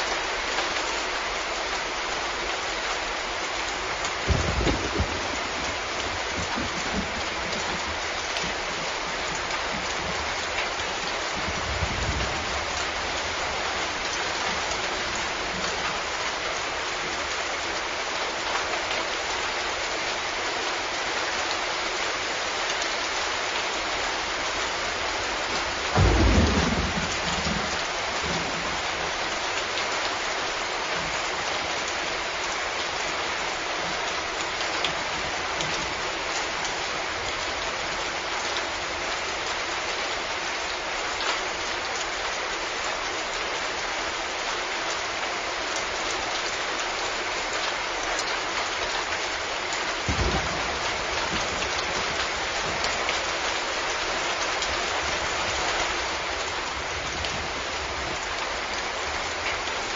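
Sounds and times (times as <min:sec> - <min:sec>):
steady rain falling: 0:00.0 - 0:59.9
thunder rumbling: 0:04.2 - 0:10.4, 0:11.2 - 0:15.7, 0:25.7 - 0:29.2, 0:50.0 - 0:53.1.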